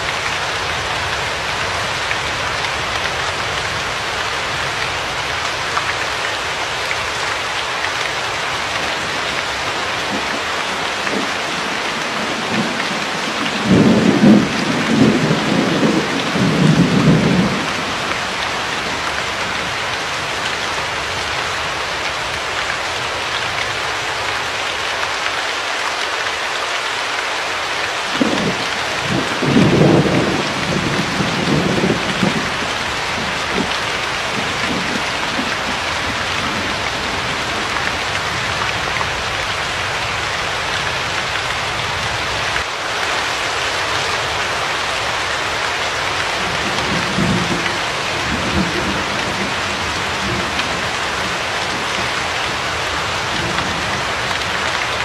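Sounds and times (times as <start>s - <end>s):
heavy rain: 0.0s - 55.0s
thunder rumbling: 8.8s - 19.7s, 28.2s - 39.2s, 46.2s - 55.0s.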